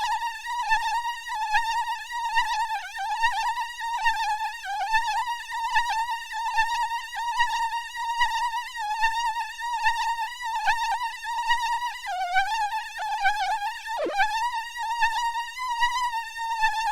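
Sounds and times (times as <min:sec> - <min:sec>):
mosquito buzzing: 0:12.2 - 0:16.9.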